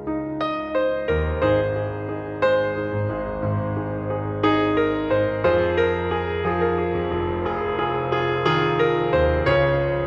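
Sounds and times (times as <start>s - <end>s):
slow gentle solo piano: 0.0s - 10.0s.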